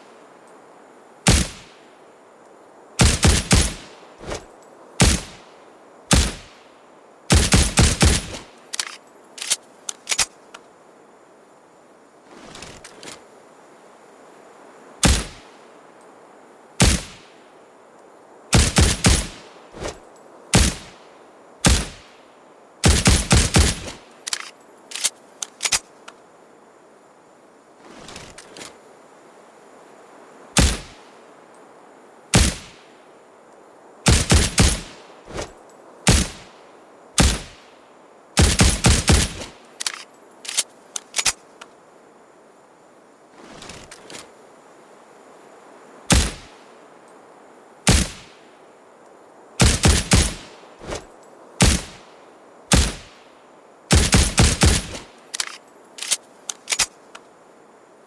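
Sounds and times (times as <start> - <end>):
suppressed pistol shots: 47.9 - 48.4, 49.6 - 50.5, 52.7 - 53.1.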